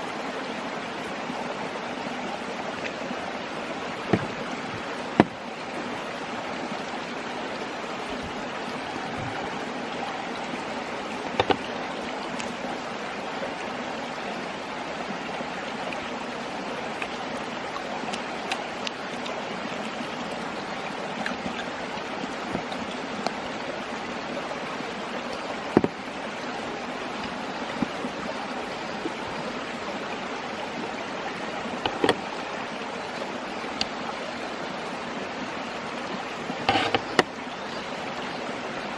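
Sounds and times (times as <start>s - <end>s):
mountain stream babbling: 0.0s - 38.9s
sharp knocks: 4.1s - 5.4s.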